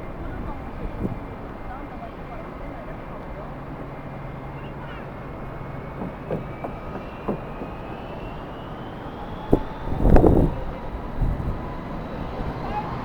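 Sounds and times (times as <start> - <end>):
wind noise: 0.0 - 1.7, 7.2 - 13.0
wind gust buffeting microphone: 0.0 - 1.8, 6.8 - 13.0
jet engines whining: 0.2 - 13.0.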